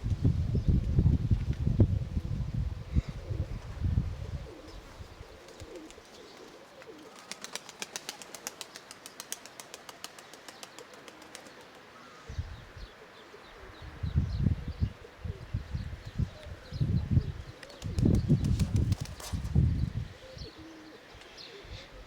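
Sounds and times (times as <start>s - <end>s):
wind buffeting microphone: 0.0s - 5.7s, 12.3s - 12.9s, 13.8s - 20.5s
pigeon wings flapping: 5.4s - 11.8s, 17.6s - 19.6s.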